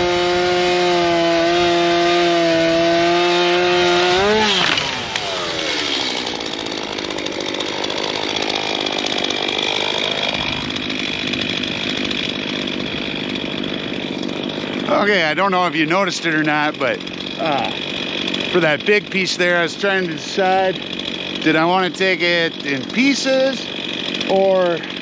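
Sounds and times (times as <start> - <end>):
chainsaw engine revving: 0.0 - 25.0.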